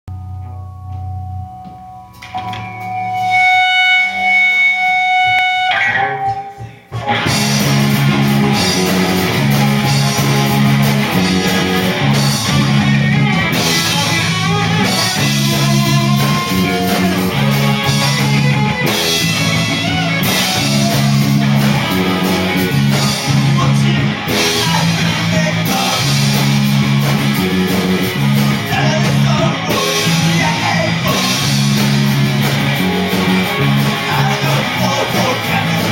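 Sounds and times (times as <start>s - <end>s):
electric guitar: 0.1s - 35.9s
rock band playing live: 0.2s - 35.9s
repeating bass pattern: 5.0s - 35.9s.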